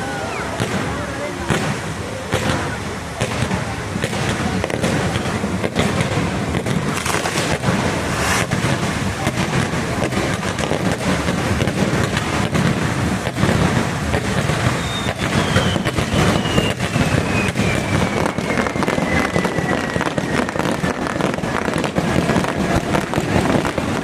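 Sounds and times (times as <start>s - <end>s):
fireworks crackles and bangs: 0.0s - 24.0s
low rumble: 5.4s - 10.4s
falling whistle: 14.6s - 20.8s.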